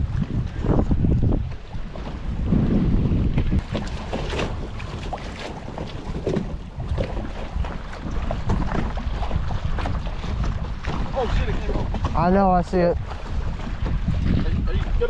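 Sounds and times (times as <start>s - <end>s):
wind buffeting microphone: 0.0s - 15.0s
fishing gear knocking on kayaks: 3.6s - 14.4s.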